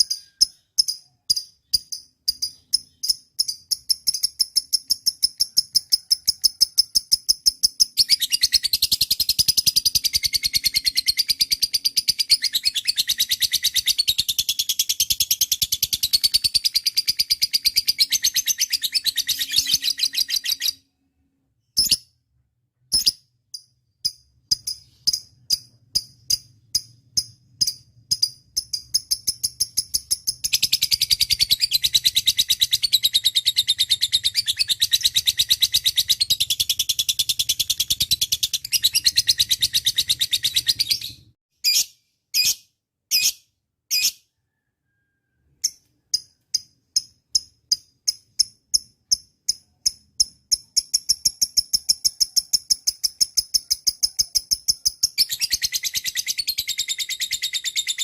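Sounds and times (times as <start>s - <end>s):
lovebird chirping: 0.0s - 22.2s, 22.8s - 58.0s.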